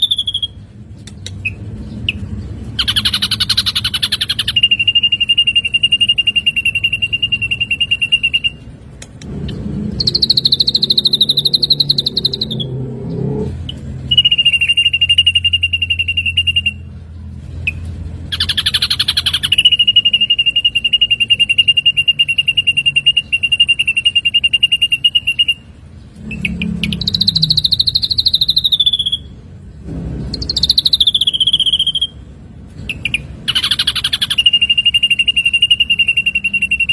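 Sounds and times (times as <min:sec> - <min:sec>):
bird singing trills: 0:00.0 - 0:36.9
low rumble: 0:09.2 - 0:14.0.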